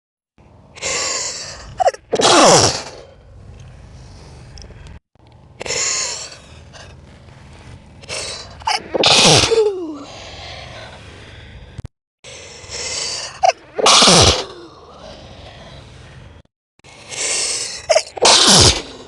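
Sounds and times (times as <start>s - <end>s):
breathy in-breath: 0.8s - 1.8s, 9.6s - 13.4s, 14.5s - 17.9s
slowed down sneeze: 0.8s - 3.1s, 8.2s - 10.2s, 12.8s - 14.8s, 17.1s - 19.0s.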